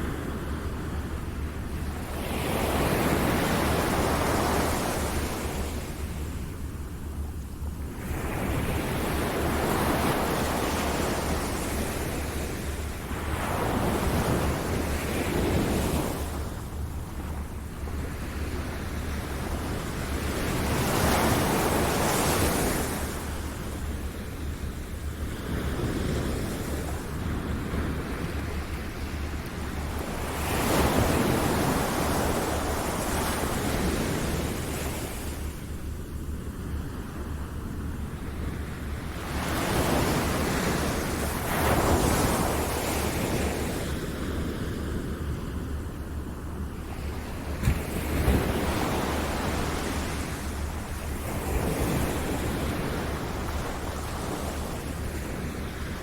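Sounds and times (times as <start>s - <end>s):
ocean waves breaking: 8.0s - 35.9s, 36.8s - 56.0s.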